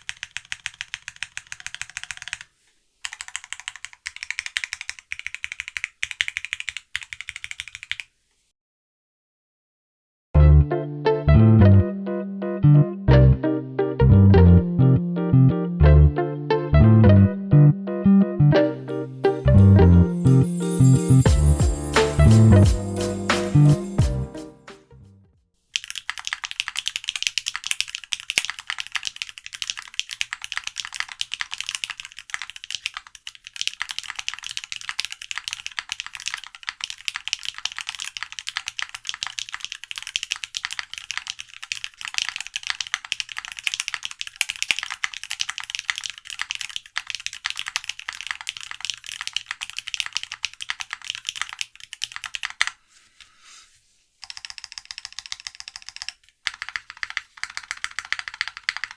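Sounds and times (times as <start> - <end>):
fast typing on mechanical keyboard: 0.0 - 8.2, 25.7 - 52.8, 54.2 - 58.9.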